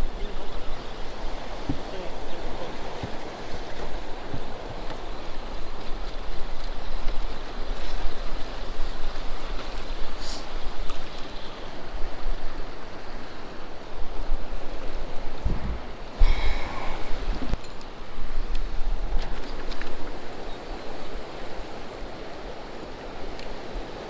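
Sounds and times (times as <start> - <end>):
wind rumbling on microphone: 0.0 - 24.0
water washing: 14.7 - 17.6.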